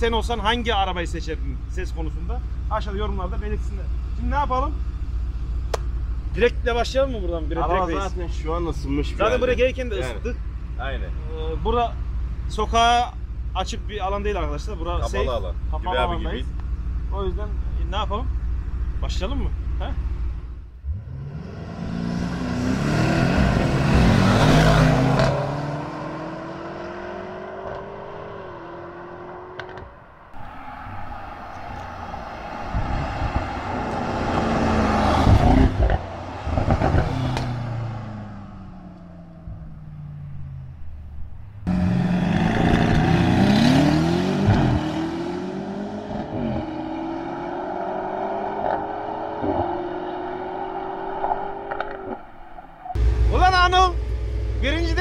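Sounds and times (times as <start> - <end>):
car engines accelerating: 0.0 - 55.0
car passing loudly: 20.9 - 40.6, 41.6 - 55.0.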